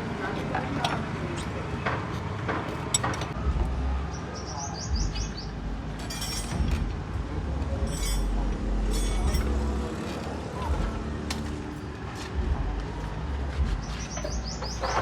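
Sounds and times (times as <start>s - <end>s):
low rumble: 3.4s - 4.1s, 12.4s - 13.9s.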